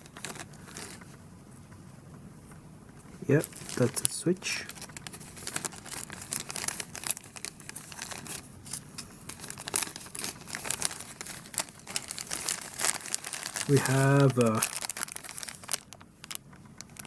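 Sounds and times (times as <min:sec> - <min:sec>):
plastic packaging crinkling: 0:00.0 - 0:01.2, 0:03.1 - 0:17.0.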